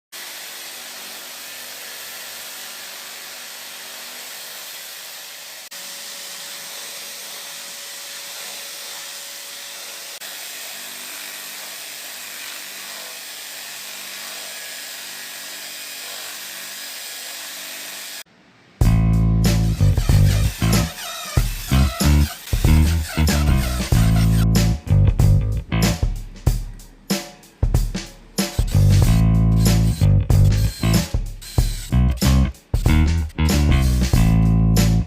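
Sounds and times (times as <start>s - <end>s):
drum sander whirring: 18.8s - 24.8s, 28.2s - 35.0s.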